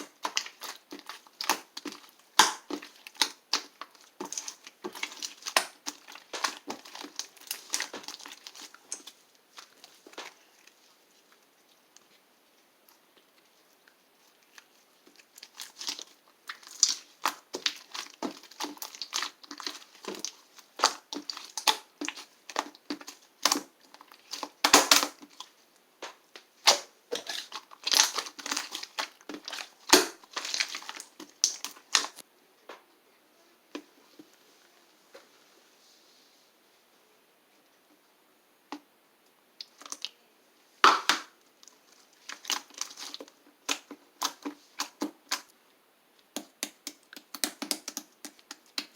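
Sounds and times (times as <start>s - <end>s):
slime crackling and popping: 0.0s - 10.7s, 14.4s - 25.5s, 26.1s - 32.2s, 40.8s - 45.5s, 46.3s - 48.9s.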